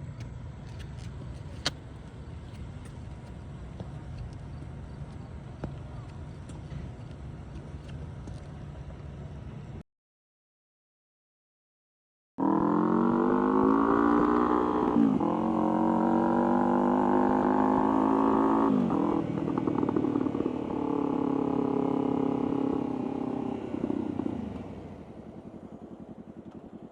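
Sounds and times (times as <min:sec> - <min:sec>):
motorcycle engine running: 0:12.4 - 0:26.9.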